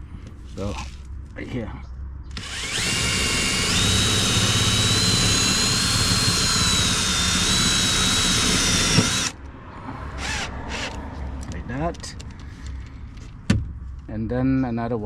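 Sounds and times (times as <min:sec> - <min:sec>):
power drill whining: 0:02.3 - 0:09.4, 0:10.2 - 0:11.0.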